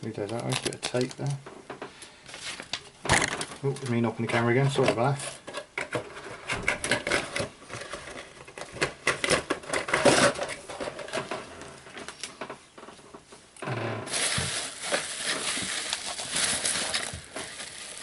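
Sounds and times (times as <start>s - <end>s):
packaging crinkling: 0.1s - 1.4s, 14.1s - 18.0s.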